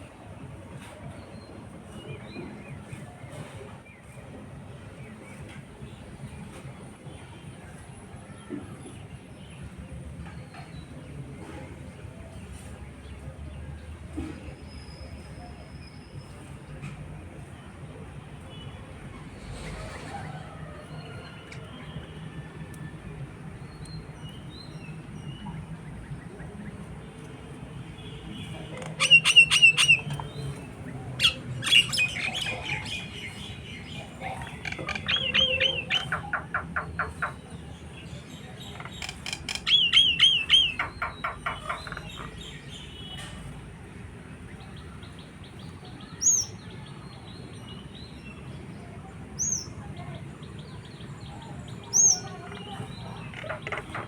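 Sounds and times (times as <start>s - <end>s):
rattling warbling bird calls: 28.8s - 30.4s, 34.3s - 37.6s, 38.6s - 42.5s.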